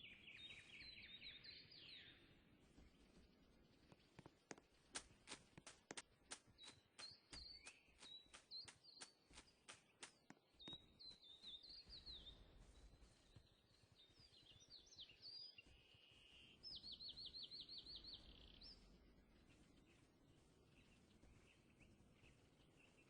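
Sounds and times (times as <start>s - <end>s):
birds chirping and singing: 0.0s - 23.0s
bird trill: 6.6s - 12.4s.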